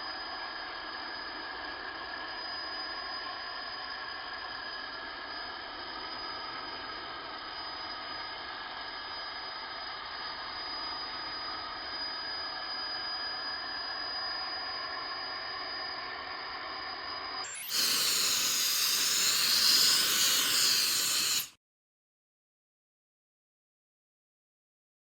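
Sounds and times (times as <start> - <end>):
router whining and humming: 17.5 - 21.5
loud hiss: 17.5 - 21.6.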